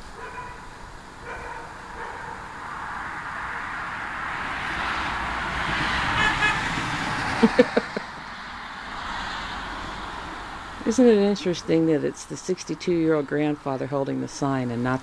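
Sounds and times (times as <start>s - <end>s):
car passing: 0.0s - 15.0s
car horn short toots: 6.2s - 6.6s.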